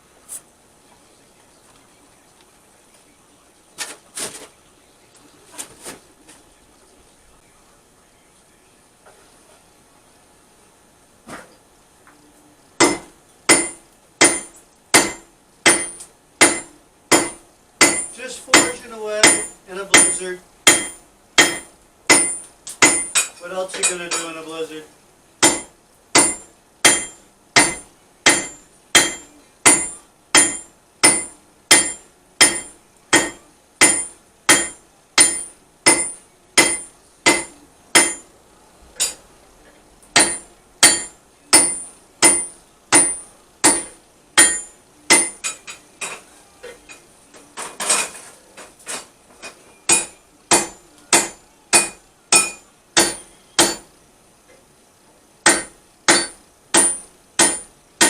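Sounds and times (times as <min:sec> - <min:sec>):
hammer ringing on anvil: 0:12.8 - 0:24.4, 0:25.4 - 0:38.3, 0:40.2 - 0:45.8, 0:49.8 - 0:53.9, 0:55.5 - 0:57.7.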